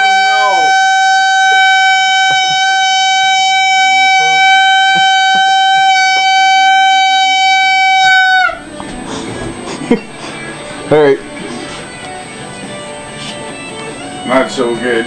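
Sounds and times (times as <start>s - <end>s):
loud buzzing tone: 0.0s - 8.8s.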